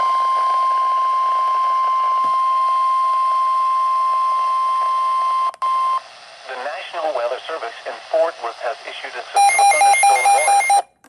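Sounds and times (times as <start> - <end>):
faint radio hiss: 6.0 - 9.4
steady high alarm beep: 9.4 - 10.9.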